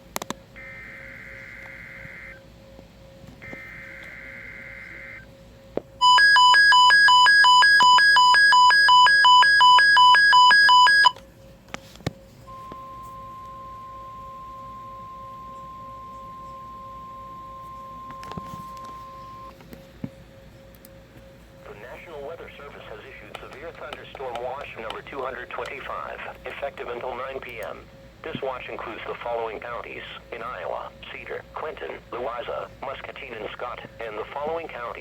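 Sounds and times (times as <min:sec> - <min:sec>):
faint steady hum: 0:00.0 - 0:35.0
pulsing alternating alarm beeps: 0:00.6 - 0:02.5, 0:03.4 - 0:05.3, 0:06.0 - 0:11.2, 0:12.5 - 0:19.6
steady warning tone: 0:00.6 - 0:11.2, 0:12.4 - 0:35.0.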